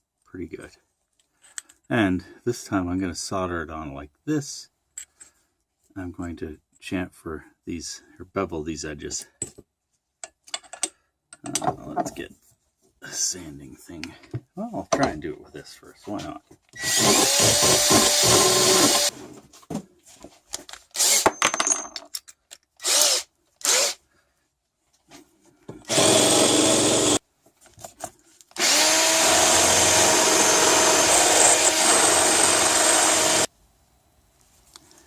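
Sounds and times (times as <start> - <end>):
metal part knocks and scrapes: 10.5 - 12.2
power tool motor whine: 16.8 - 19.1, 25.9 - 27.2, 28.6 - 33.5.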